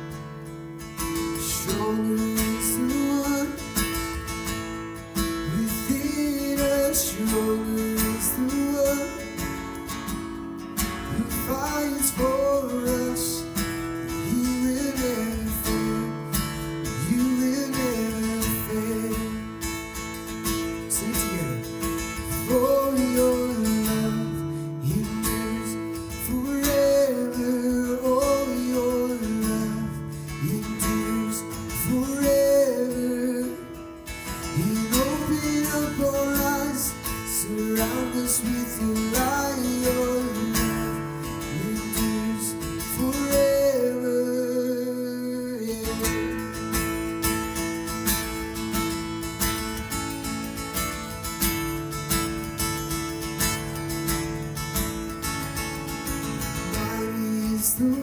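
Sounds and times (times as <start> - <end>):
strummed acoustic guitar: 0.0 - 58.0
person singing: 1.4 - 4.1, 5.4 - 9.7, 11.1 - 19.5, 20.9 - 33.8, 34.5 - 46.6, 56.6 - 58.0.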